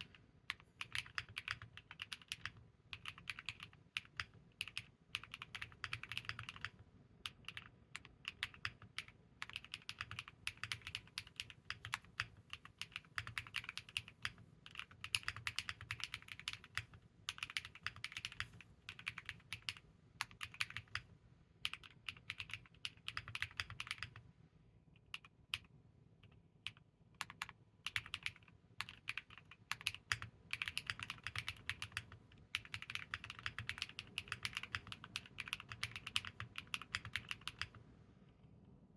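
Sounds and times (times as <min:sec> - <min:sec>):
mechanical keyboard typing: 0:00.0 - 0:21.0, 0:21.6 - 0:24.2, 0:25.0 - 0:37.8.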